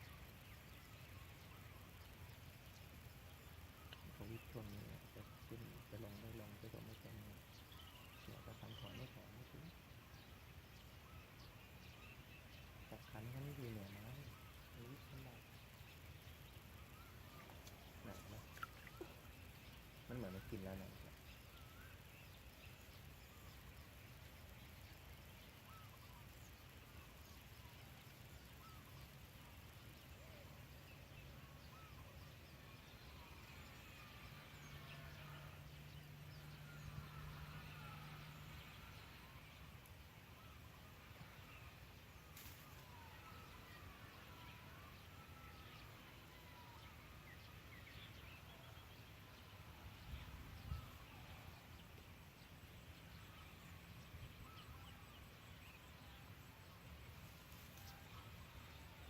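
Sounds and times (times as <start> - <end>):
faint bird chirps: 0.0 - 59.0.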